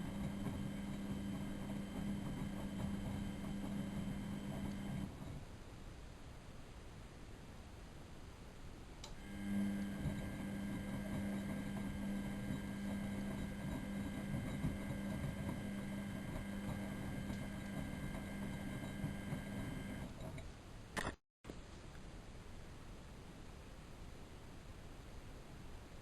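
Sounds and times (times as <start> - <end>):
washing machine motor hum: 0.0 - 5.5, 9.0 - 20.4.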